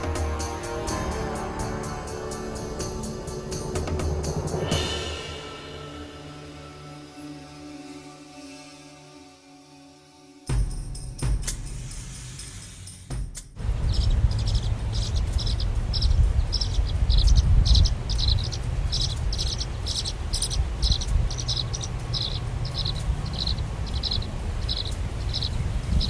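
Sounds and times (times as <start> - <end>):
low rumble: 0.0 - 7.8, 10.6 - 26.0
insect chirping: 0.0 - 9.2, 13.6 - 26.0.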